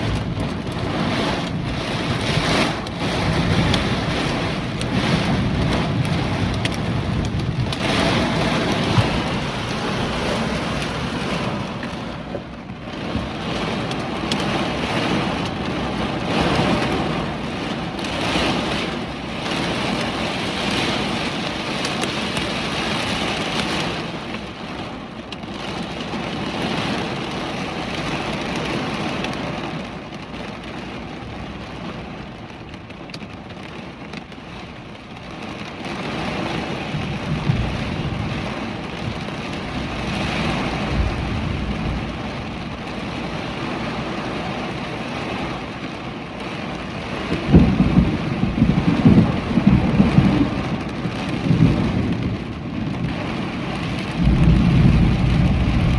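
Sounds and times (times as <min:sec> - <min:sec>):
wind rumbling: 0:00.0 - 0:24.2, 0:35.6 - 0:55.9
heavy rain downpour: 0:00.0 - 0:55.9.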